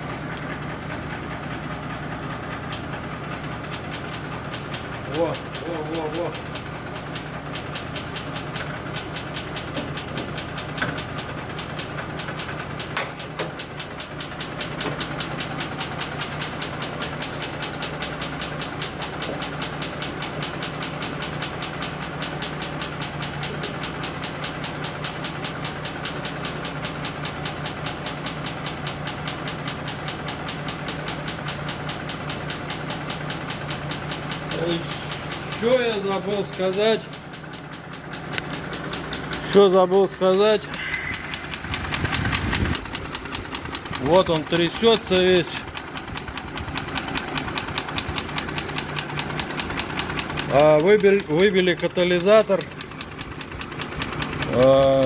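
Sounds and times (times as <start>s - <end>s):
car engine knocking: 0.0s - 55.0s.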